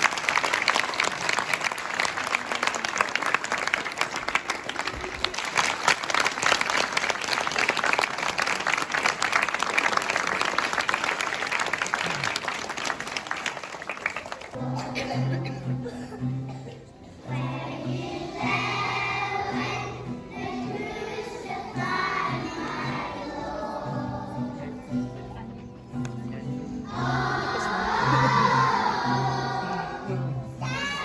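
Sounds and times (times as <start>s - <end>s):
audience applauding: 0.0s - 14.6s.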